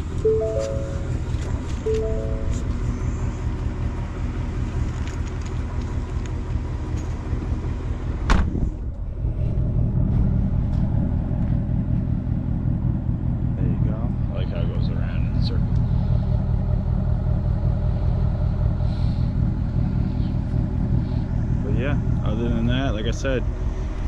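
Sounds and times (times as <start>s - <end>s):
car engine idling: 0.0s - 24.0s
short musical notes: 0.2s - 2.8s.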